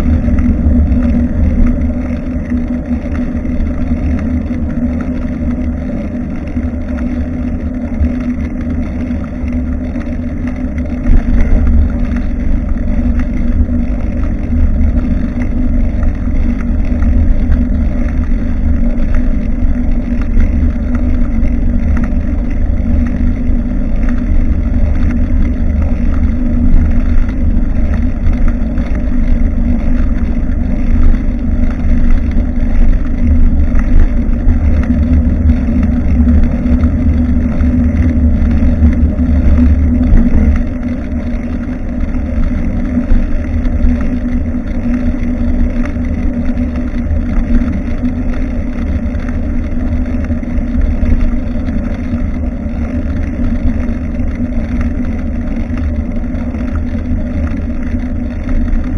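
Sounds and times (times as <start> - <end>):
steady low hum: 0.0 - 58.9
wind buffeting microphone: 0.0 - 58.9.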